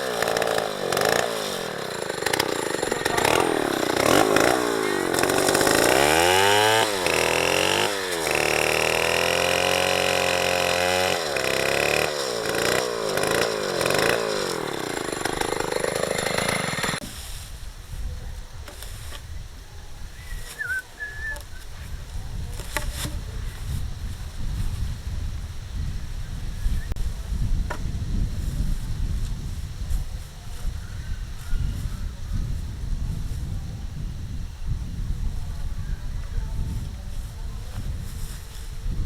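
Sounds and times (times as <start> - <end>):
chainsaw engine revving: 0.0 - 17.0.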